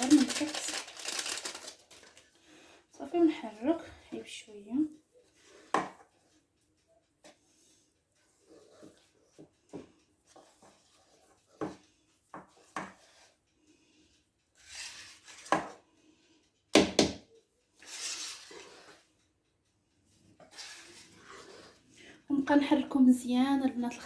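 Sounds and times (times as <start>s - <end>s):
utensil scraping mixing bowl: 5.2s - 6.4s, 7.2s - 16.3s, 17.8s - 19.2s, 20.1s - 22.0s.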